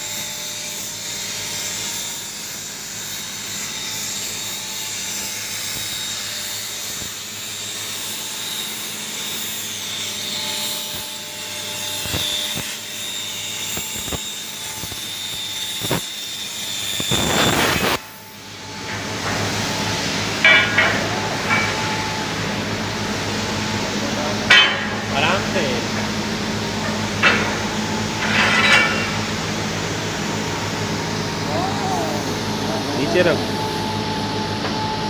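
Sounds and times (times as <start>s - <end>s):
plasma cutter hissing: 12.0s - 18.8s.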